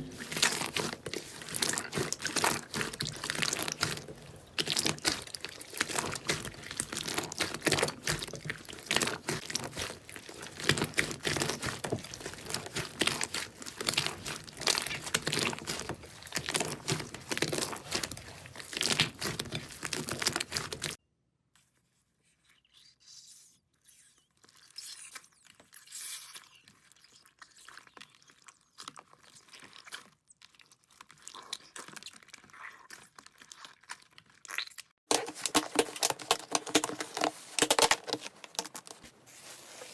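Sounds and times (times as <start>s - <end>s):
crunchy slime squeezed by hand: 0.0s - 21.0s.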